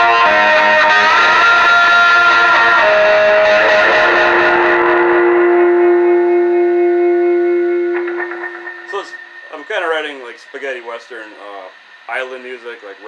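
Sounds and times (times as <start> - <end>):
electric guitar chord ringing: 0.0 - 13.0
guitar string noise: 7.6 - 12.1.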